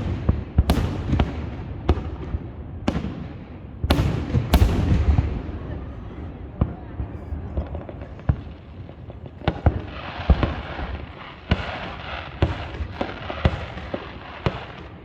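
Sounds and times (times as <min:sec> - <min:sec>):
fireworks booming: 0:00.0 - 0:15.0
fireworks crackling hiss: 0:08.0 - 0:15.0.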